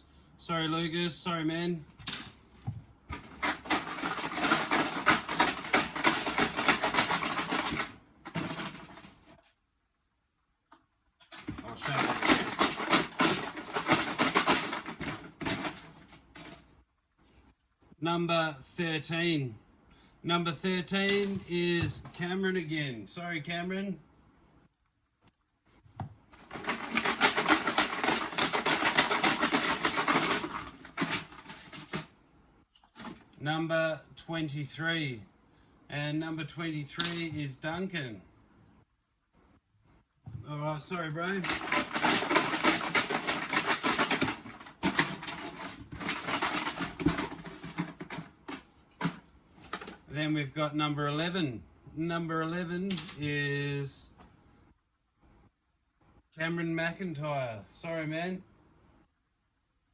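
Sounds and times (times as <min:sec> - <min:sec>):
tokens rattling in a shaken container: 0:03.1 - 0:09.2, 0:11.3 - 0:16.6, 0:26.4 - 0:32.1, 0:41.3 - 0:50.1.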